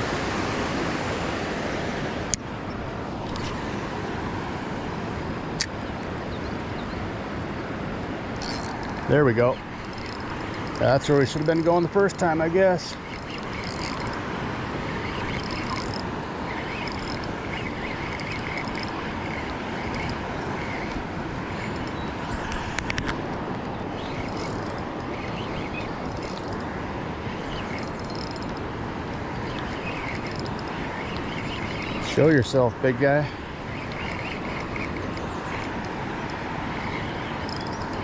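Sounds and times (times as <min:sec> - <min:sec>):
faint bird chirps: 0:29.4 - 0:35.8.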